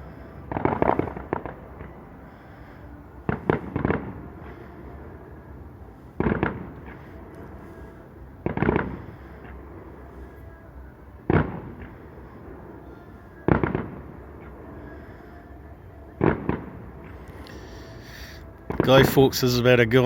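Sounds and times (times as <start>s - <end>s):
fireworks bangs: 0.4s - 2.0s, 3.2s - 4.6s, 6.2s - 7.6s, 8.4s - 9.6s, 11.3s - 12.1s, 13.4s - 14.7s, 18.7s - 20.0s.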